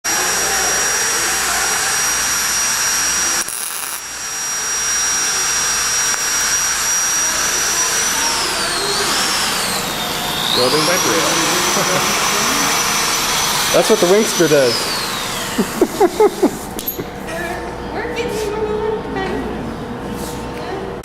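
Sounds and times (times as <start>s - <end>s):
loud hiss: 0.1s - 16.8s
machine whine: 0.1s - 18.2s.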